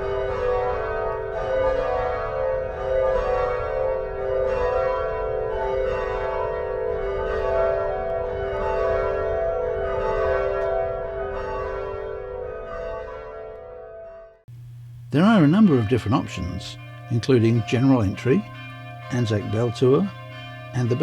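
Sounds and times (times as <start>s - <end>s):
tower bells change ringing: 0.0s - 14.3s, 15.0s - 21.0s.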